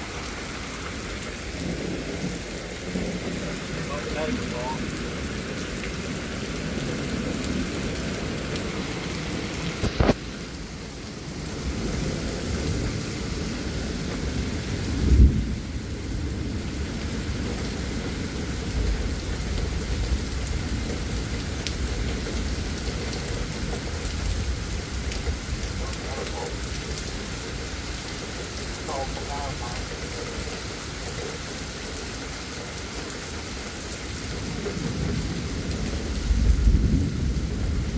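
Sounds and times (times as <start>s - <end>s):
heavy rain and wind: 0.0s - 37.9s
loud low thunder rumble: 34.8s - 37.9s.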